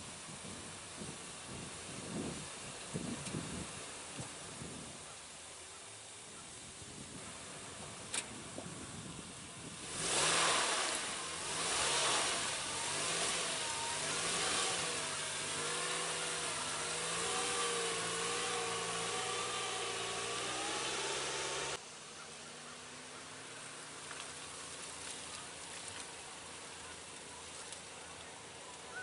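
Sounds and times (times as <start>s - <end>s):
wheels spinning: 7.1s - 21.8s
vehicle engine revving: 9.6s - 21.8s.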